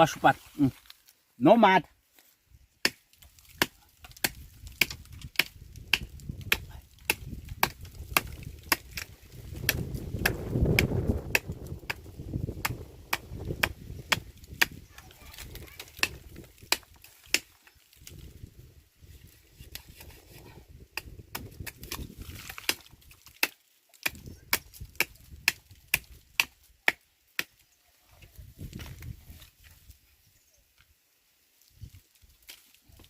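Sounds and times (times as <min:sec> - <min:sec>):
blade chopping tree bark: 0:02.8 - 0:14.8, 0:15.4 - 0:17.6, 0:21.0 - 0:27.6.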